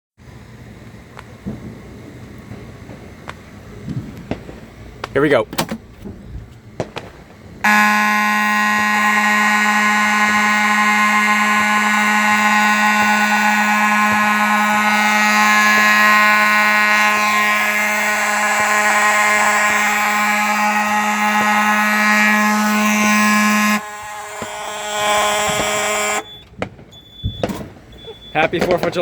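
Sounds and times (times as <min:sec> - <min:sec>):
fire alarm horn: 0:07.6 - 0:28.6.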